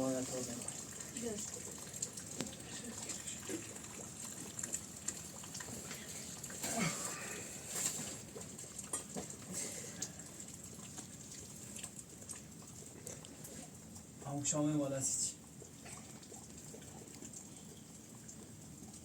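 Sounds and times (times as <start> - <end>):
steady rain hiss: 0.0 - 3.7, 5.7 - 8.4, 14.2 - 15.4
drips pattering: 0.0 - 19.0.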